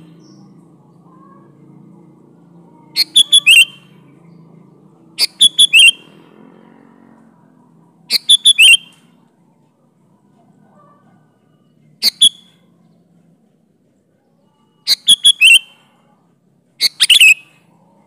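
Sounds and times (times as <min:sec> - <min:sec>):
bulbul singing whistled notes: 0:03.0 - 0:04.1, 0:05.2 - 0:06.2, 0:08.1 - 0:09.1, 0:12.0 - 0:12.7, 0:14.8 - 0:15.9, 0:16.8 - 0:17.6.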